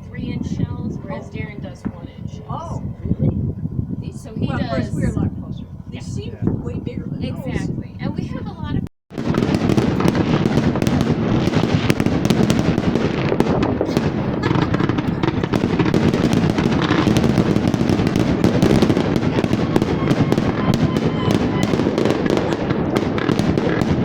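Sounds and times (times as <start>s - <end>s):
fireworks bursting and crackling: 7.5s - 24.0s.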